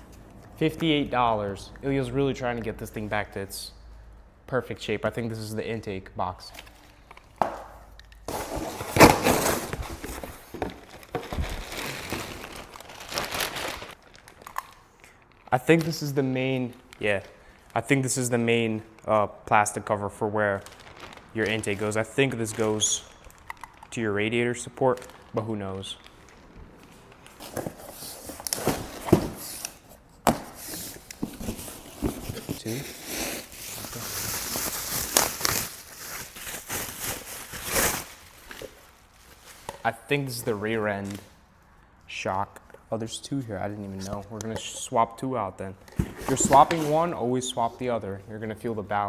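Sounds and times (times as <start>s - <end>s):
packaging tearing and crinkling: 8.3s - 15.8s, 20.5s - 24.0s, 30.6s - 39.8s.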